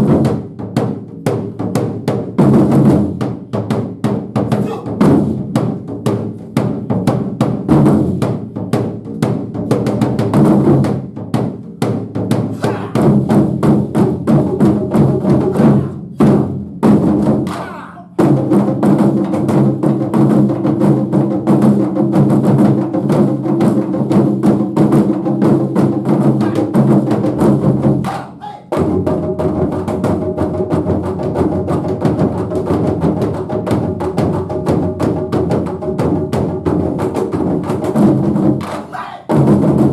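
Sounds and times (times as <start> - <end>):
taiko drums playing rapid strokes: 0.0 - 39.9.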